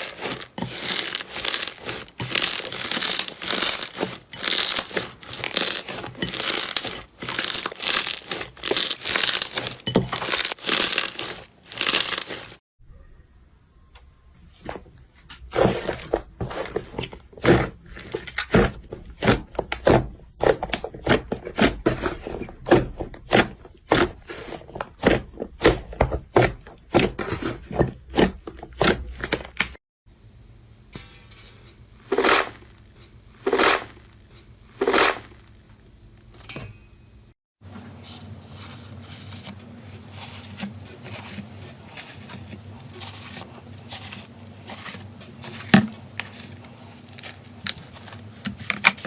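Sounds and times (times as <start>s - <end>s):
slime squishes: 0.0s - 12.6s.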